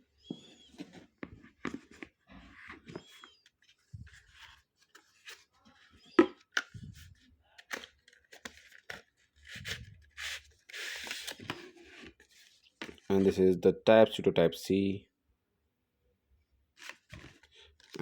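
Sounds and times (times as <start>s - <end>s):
packaging clicks and rustles: 2.9s - 13.1s, 16.8s - 18.0s.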